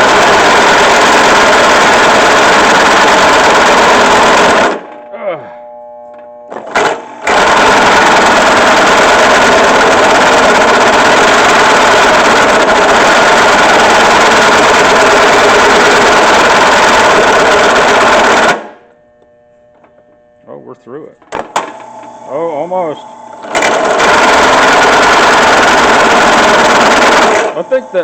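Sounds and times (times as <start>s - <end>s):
drill press grinding through pipe: 0.0s - 5.3s, 6.5s - 18.9s, 21.6s - 28.0s.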